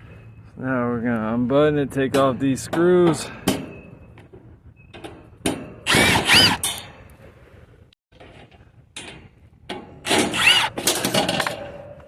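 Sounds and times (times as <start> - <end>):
power drill motor whine: 5.9 - 6.6, 10.3 - 10.8.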